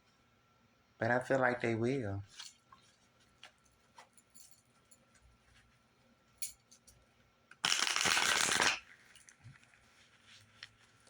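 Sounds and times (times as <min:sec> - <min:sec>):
cards being shuffled: 0:07.7 - 0:09.0.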